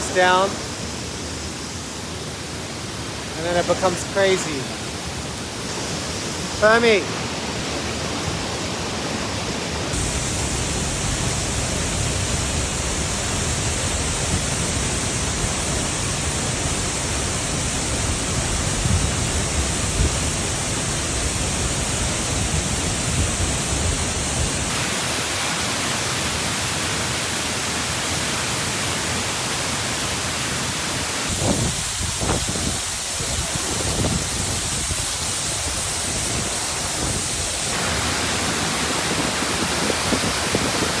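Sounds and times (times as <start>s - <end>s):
waterfall rushing: 0.0s - 41.0s.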